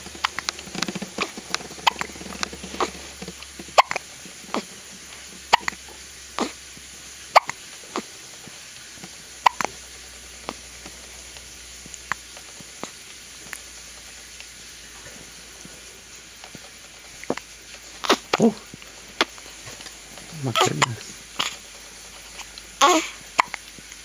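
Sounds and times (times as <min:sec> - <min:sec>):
baby hiccuping: 0:01.2 - 0:02.1, 0:03.8 - 0:04.7, 0:05.5 - 0:05.8, 0:06.4 - 0:06.6, 0:07.3 - 0:08.1, 0:09.4 - 0:09.8, 0:18.0 - 0:18.6, 0:20.4 - 0:21.6, 0:22.8 - 0:23.6.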